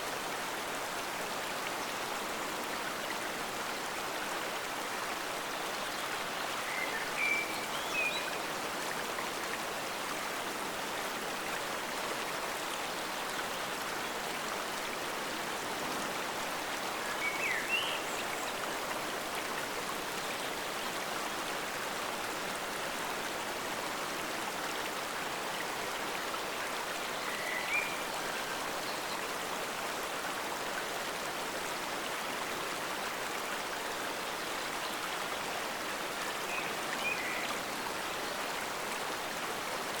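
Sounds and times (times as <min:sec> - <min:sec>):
stream flowing: 0:00.0 - 0:40.0.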